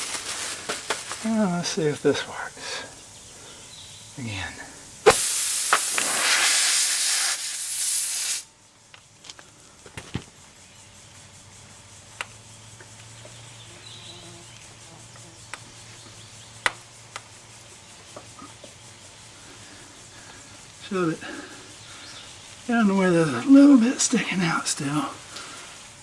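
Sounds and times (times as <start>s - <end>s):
air hissing out of a tire: 4.8s - 8.5s.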